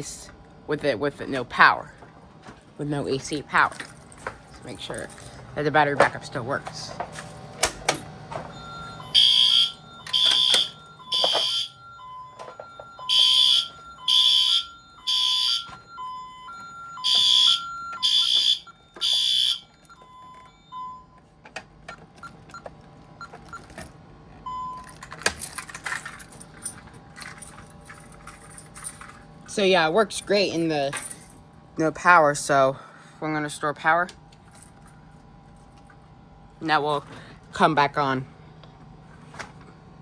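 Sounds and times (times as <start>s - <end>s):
fire alarm horn blasts: 8.5s - 21.3s.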